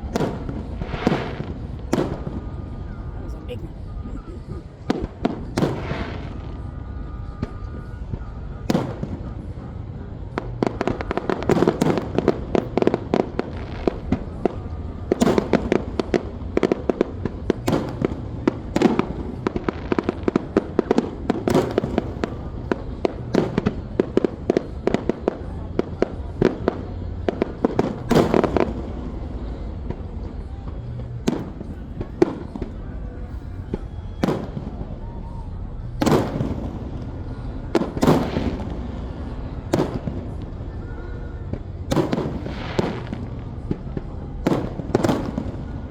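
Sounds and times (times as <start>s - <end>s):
fireworks bangs: 0.0s - 9.7s, 10.3s - 45.9s
fireworks crackling: 0.0s - 45.9s.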